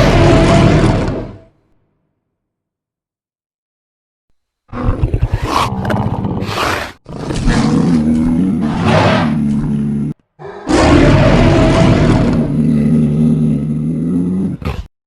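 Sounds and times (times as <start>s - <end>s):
long creature roar: 0.0s - 1.4s, 4.7s - 14.9s
rattling growl: 4.7s - 14.9s.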